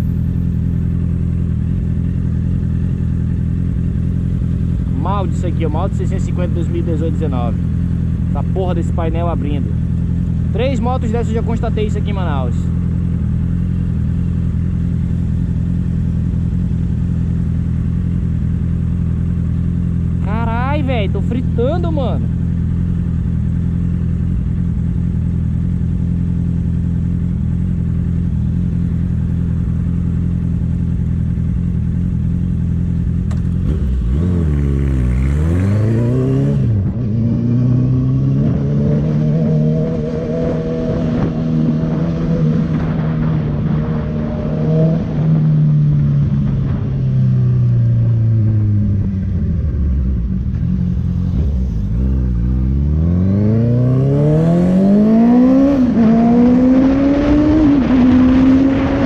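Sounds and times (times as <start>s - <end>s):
motorcycle engine idling and revving: 0.0s - 59.0s.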